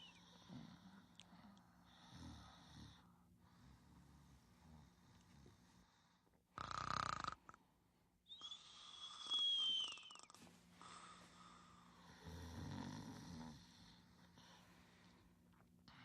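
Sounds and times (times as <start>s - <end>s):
rasping snore: 6.6s - 7.4s
high thin whistle: 8.3s - 10.4s.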